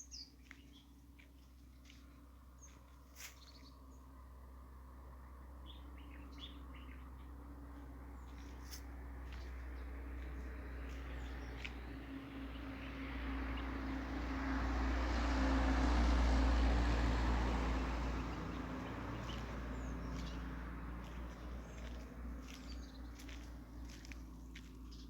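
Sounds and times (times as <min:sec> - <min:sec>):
small birds chirping: 0:00.0 - 0:04.2, 0:05.6 - 0:13.8, 0:18.1 - 0:25.0
vehicle driving past: 0:06.4 - 0:25.0.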